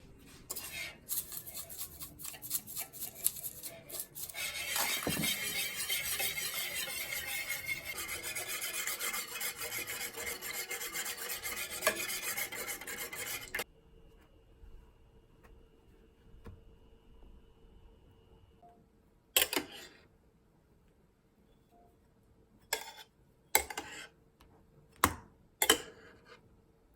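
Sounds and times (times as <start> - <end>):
whisk scraping a bowl: 0.5 - 13.6.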